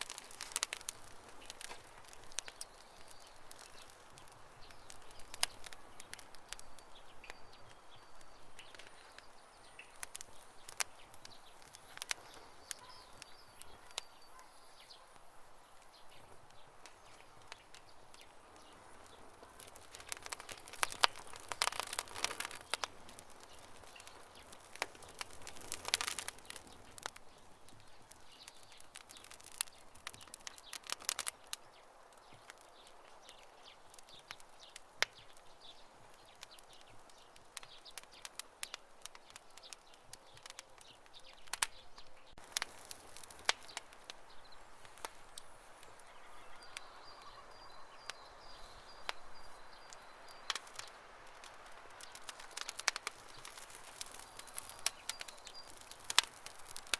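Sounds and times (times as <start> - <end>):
campfire crackling and popping: 0.0 - 56.9
faint steady hiss: 0.0 - 56.9.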